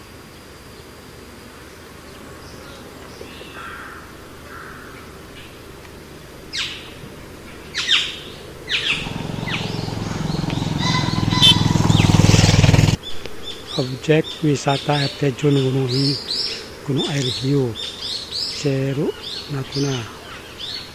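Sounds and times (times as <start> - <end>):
birds chirping: 6.5 - 20.9
rushing noise with low hum: 8.5 - 13.0.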